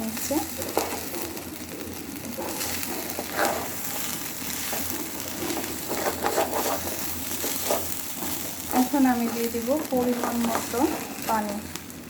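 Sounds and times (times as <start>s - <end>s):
rice sizzling in oil: 0.0s - 12.0s
spoon scraping pot bottom: 4.6s - 11.1s.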